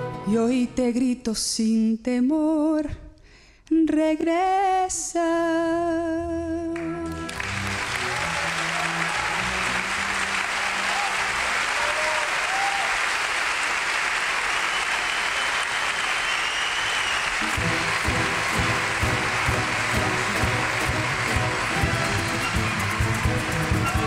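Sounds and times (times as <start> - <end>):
audience applauding: 7.1 - 24.0
music with plucked strings: 17.5 - 24.0.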